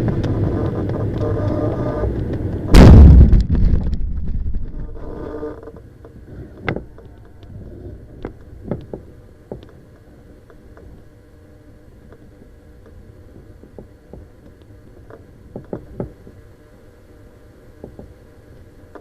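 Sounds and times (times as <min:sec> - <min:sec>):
glider hitting ground thump: 0:02.7 - 0:05.0.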